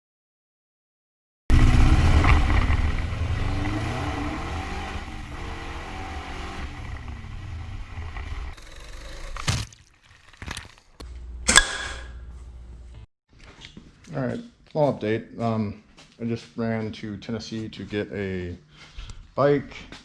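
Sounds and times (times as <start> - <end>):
engine deep rumble: 1.5 - 8.6.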